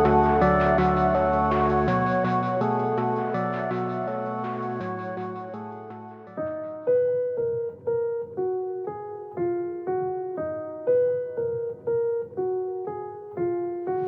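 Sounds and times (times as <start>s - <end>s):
slow piano-like keyboard melody: 0.0s - 14.0s.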